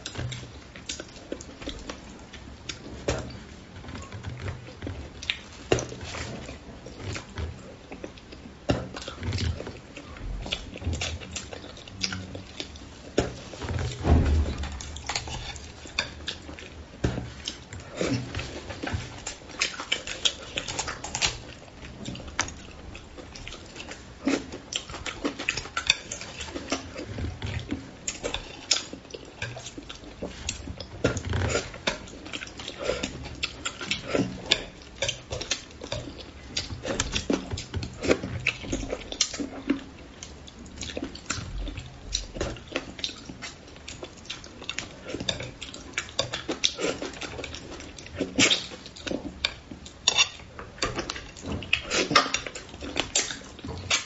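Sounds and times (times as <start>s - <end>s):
person chewing wetly: 0.0s - 14.1s, 14.8s - 54.0s.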